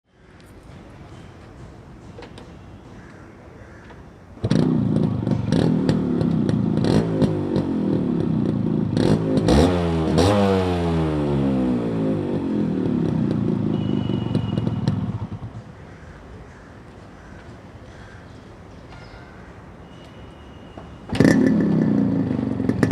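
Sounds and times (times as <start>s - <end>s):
motorcycle exhaust revving: 4.4s - 15.8s, 21.1s - 22.9s.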